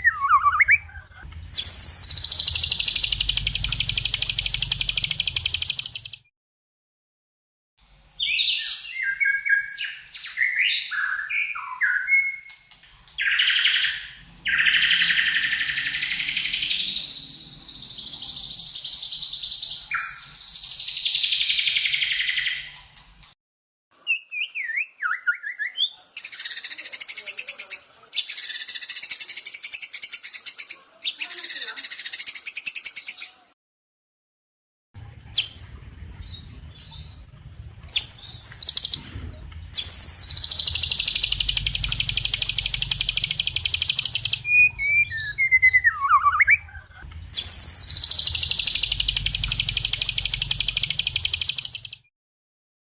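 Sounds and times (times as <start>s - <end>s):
songbird chirps and trills: 0.0s - 6.3s, 24.0s - 33.5s, 35.3s - 52.1s
harsh buzzy bird phrases: 25.8s - 33.5s.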